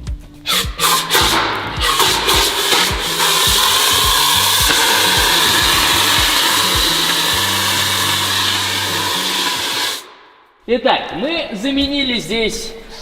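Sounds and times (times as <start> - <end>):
music with beat and bass: 0.0 - 9.2
loud rushing hiss: 0.5 - 10.3.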